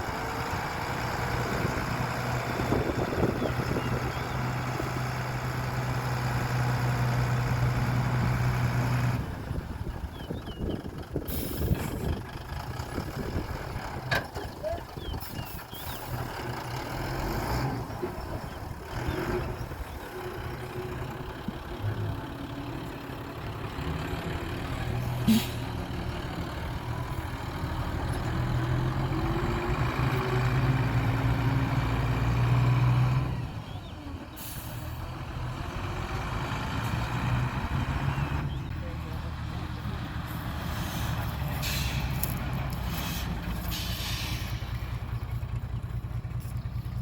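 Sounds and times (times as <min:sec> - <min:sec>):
diesel machinery engine hum: 0:00.0 - 0:47.0
short air hiss: 0:42.8 - 0:44.7.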